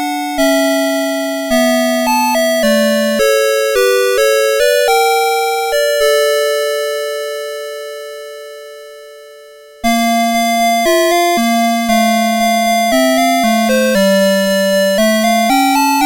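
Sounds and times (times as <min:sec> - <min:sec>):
alarm clock electronic melody: 0:00.0 - 0:08.1, 0:09.8 - 0:16.0.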